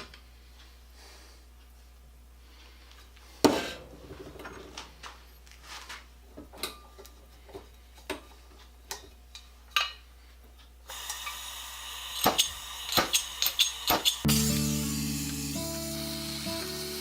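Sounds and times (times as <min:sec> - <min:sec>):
steady hiss: 0:10.9 - 0:17.0.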